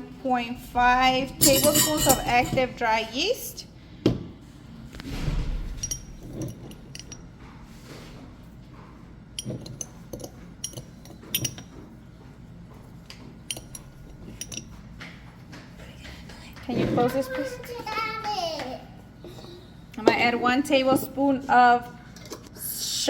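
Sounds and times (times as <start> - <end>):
spoon clinking glassware: 1.4 - 2.6, 9.4 - 11.8, 13.5 - 14.8.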